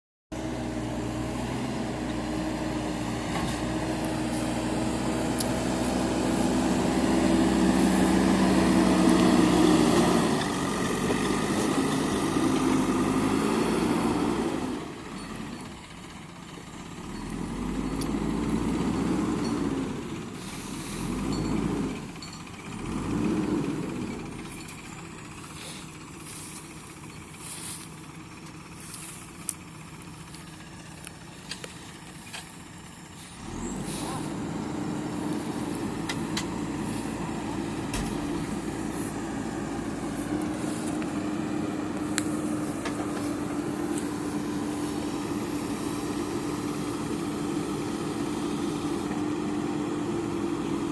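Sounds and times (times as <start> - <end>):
diesel engine revving: 0.3 - 50.9
steady engine drone: 0.3 - 50.9.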